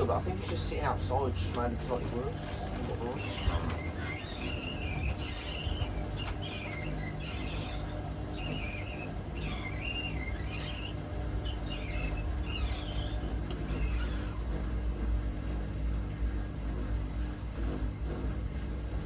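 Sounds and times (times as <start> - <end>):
washing machine drum humming: 0.0 - 19.0
high wavering squeak: 3.0 - 14.4.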